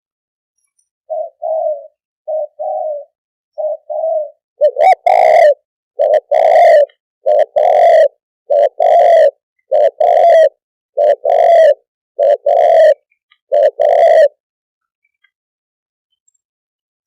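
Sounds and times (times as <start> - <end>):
dove cooing: 1.1 - 14.4.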